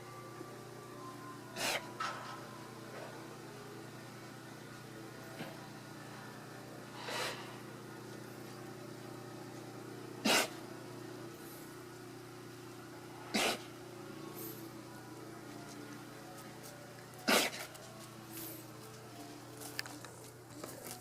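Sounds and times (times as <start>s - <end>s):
alpaca sneezing: 1.6s - 2.2s, 7.0s - 7.6s, 10.2s - 10.6s, 13.2s - 13.8s, 17.2s - 17.7s.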